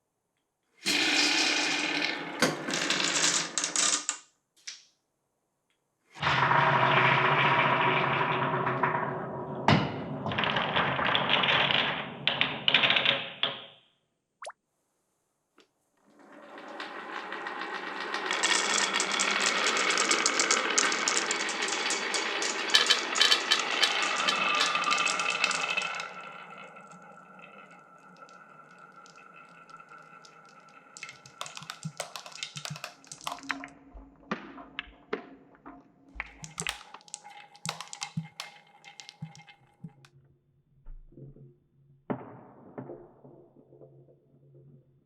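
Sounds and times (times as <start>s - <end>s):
marbles dropping and striking track: 0.9s - 4.3s, 16.6s - 35.3s, 36.2s - 40.1s
marbles rolling along a track: 0.9s - 4.3s, 16.1s - 33.8s, 36.2s - 40.1s.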